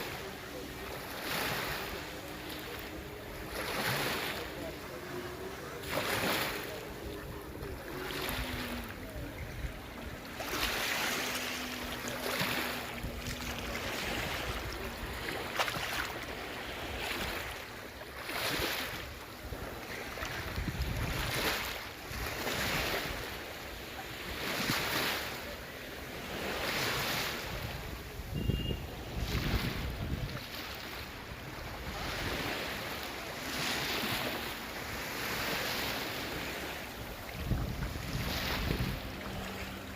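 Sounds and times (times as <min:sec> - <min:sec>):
waves washing onto shore: 0:00.0 - 0:39.9
wind buffeting microphone: 0:19.4 - 0:22.9, 0:27.5 - 0:30.5, 0:36.2 - 0:39.9.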